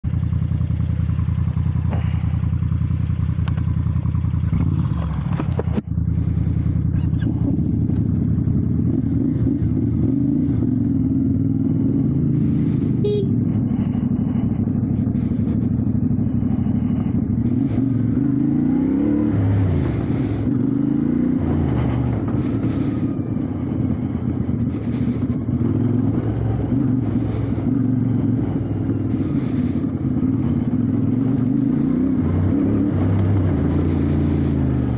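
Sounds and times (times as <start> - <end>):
motorcycle engine revving: 0.0 - 34.9.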